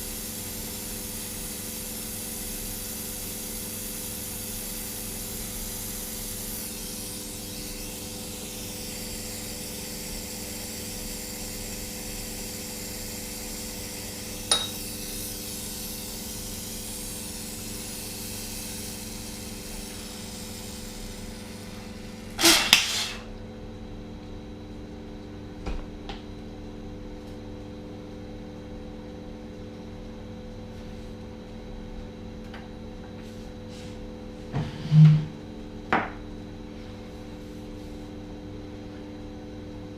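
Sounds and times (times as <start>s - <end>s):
burner flame hissing: 0.0s - 23.4s
short loud pop: 22.4s - 23.2s.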